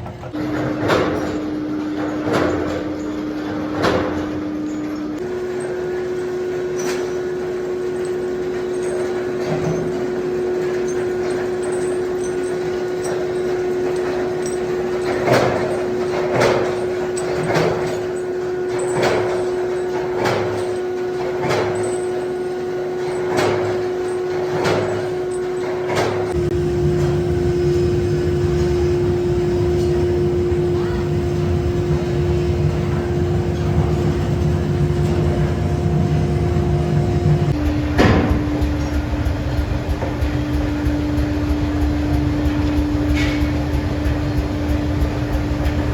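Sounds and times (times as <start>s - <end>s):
machinery humming: 0.0s - 45.9s
heavy metal strikes: 26.4s - 45.9s
low rumble: 26.4s - 45.9s.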